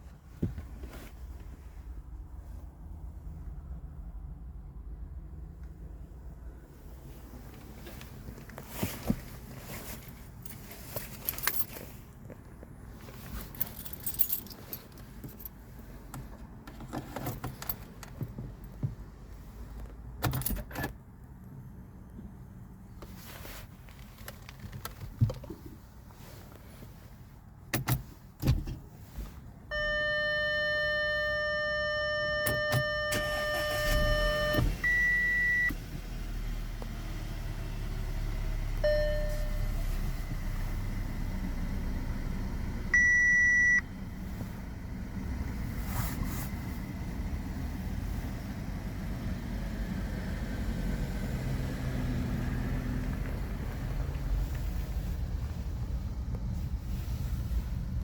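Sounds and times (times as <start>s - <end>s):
car engine starting and running: 0.0s - 58.0s
steady car chime: 29.7s - 35.7s, 38.8s - 39.8s
short dashboard beeps: 29.7s - 35.8s, 38.8s - 39.8s, 42.9s - 43.9s.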